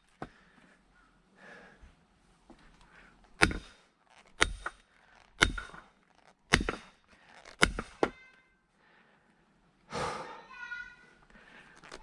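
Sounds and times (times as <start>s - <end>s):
hammer striking steel wedge: 3.4s - 3.8s, 4.4s - 4.8s, 5.4s - 5.8s, 6.5s - 7.0s, 7.6s - 8.2s.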